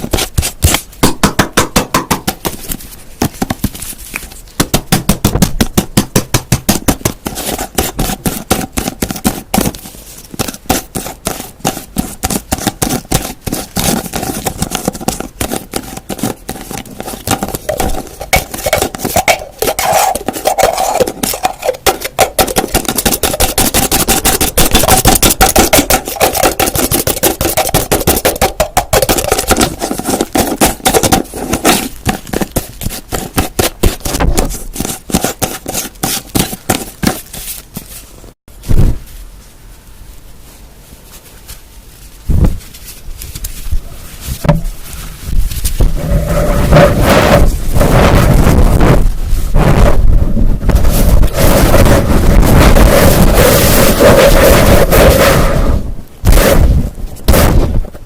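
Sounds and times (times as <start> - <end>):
fast tapping on hard object: 0.0 - 3.8, 4.6 - 9.8, 10.4 - 37.2.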